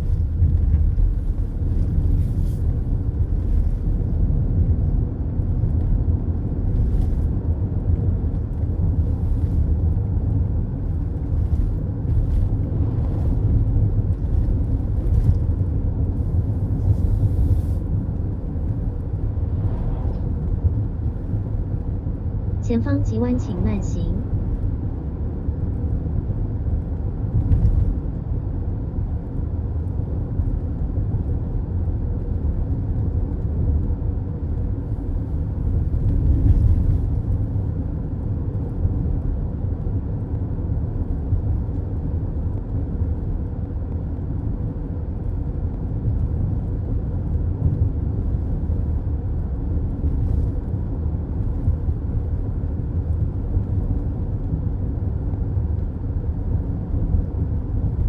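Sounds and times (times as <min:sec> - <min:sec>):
tyre and road rumble: 0:08.5 - 0:22.0.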